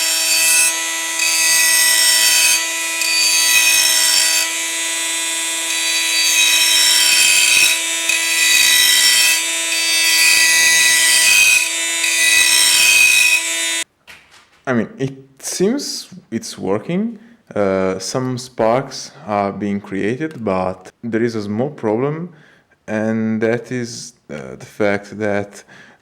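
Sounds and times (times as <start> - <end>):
grinder motor whining: 0.0 - 13.8
grinding stone on metal: 0.0 - 13.8.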